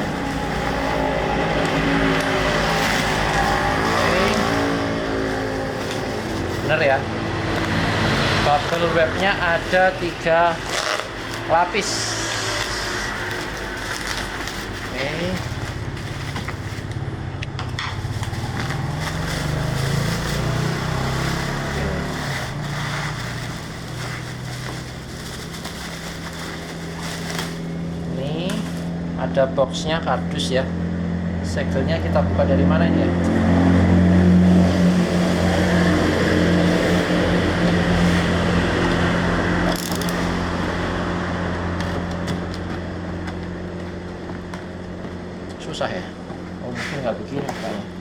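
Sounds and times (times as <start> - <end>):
low engine hum: 0.0 - 48.0
plastic packaging clicks: 39.6 - 40.8.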